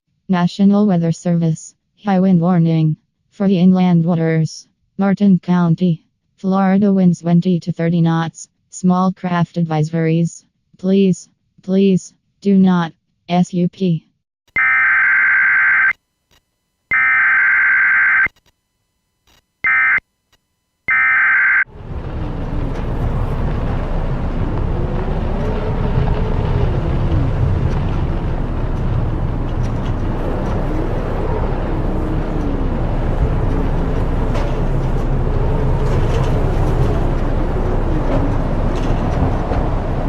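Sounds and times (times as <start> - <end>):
screechy electronic alert tones: 14.6 - 15.9, 16.9 - 18.3, 19.6 - 20.0, 20.9 - 21.7.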